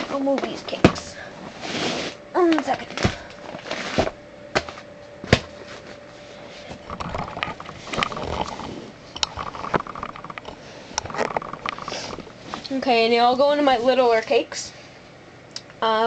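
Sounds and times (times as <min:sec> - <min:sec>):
rustling: 0:05.6 - 0:13.0.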